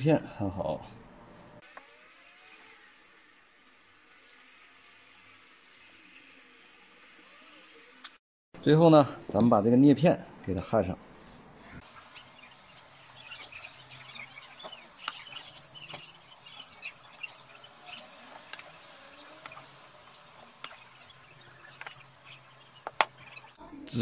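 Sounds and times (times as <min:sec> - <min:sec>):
soldering iron sizzling: 0:01.6 - 0:08.2, 0:11.8 - 0:24.0.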